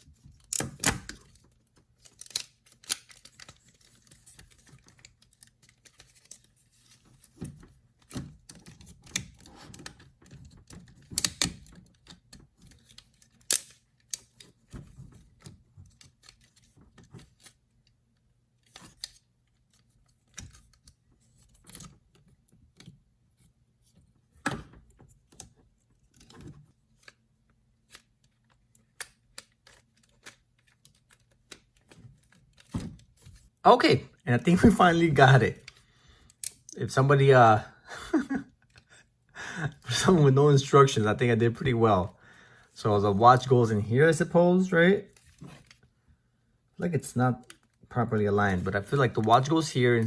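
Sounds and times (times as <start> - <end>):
plastic toy parts clicking: 0.3 - 6.5, 10.8 - 14.6
plastic toy parts snapping: 2.0 - 3.6, 12.8 - 14.5.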